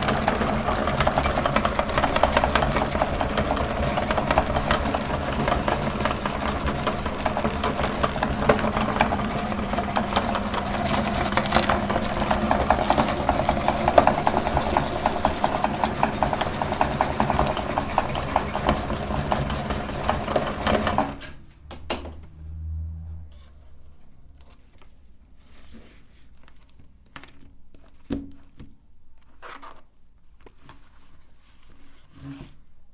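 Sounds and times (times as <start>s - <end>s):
electric meat grinder running: 0.0s - 21.2s.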